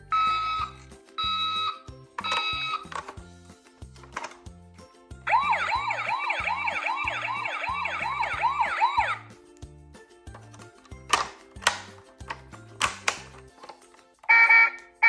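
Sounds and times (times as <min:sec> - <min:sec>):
toy electronic siren wailing: 0:00.0 - 0:02.8, 0:05.3 - 0:09.3, 0:14.3 - 0:14.8
background music with bass: 0:00.0 - 0:13.6.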